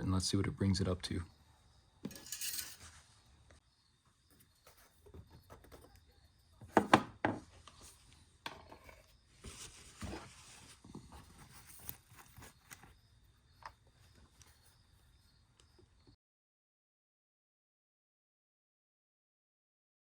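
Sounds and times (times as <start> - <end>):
plastic bottle knocks: 6.7 - 7.4.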